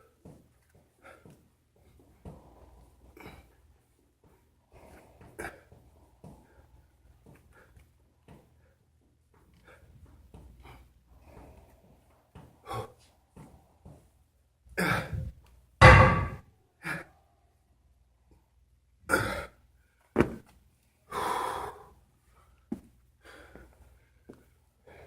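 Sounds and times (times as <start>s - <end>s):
person breathing heavily: 10.6s - 13.2s, 21.1s - 22.6s
low thump: 15.8s - 16.4s.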